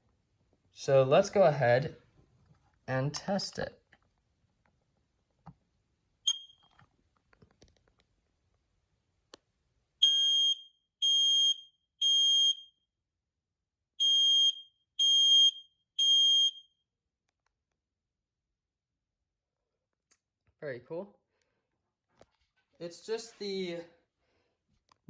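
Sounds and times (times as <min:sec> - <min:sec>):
smoke alarm chirp: 0:06.3 - 0:06.7, 0:10.0 - 0:12.8, 0:14.0 - 0:16.8.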